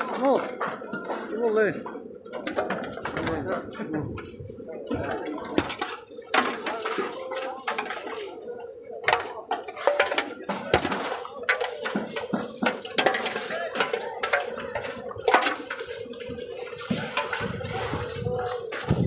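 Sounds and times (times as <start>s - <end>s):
hard objects knocking and clinking: 9.0s - 17.7s.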